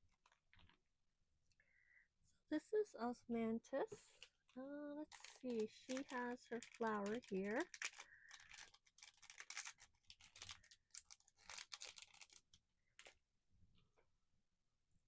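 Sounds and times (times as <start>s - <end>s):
plastic packaging crackling: 4.1s - 13.2s.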